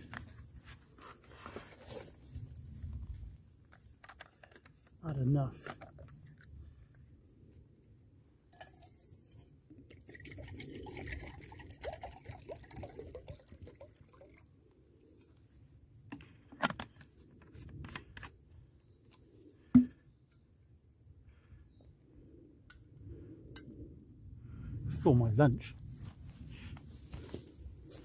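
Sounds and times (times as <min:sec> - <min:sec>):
liquid pouring into a pot: 0:09.9 - 0:14.4.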